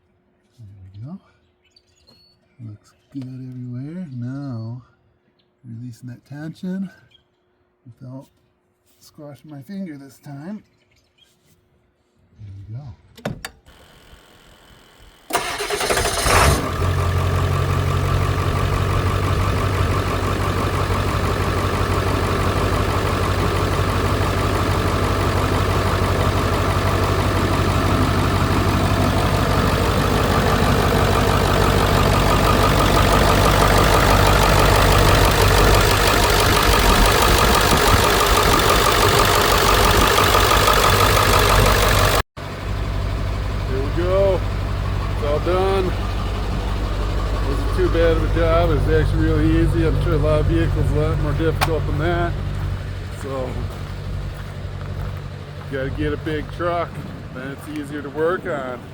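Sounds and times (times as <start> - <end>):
diesel engine cranking and idling: 13.7 - 58.9.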